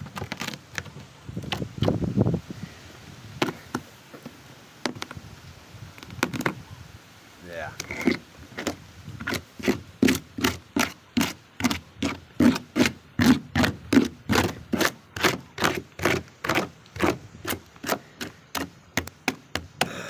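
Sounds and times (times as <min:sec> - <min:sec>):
hammer thudding on plywood: 0:18.2 - 0:20.0.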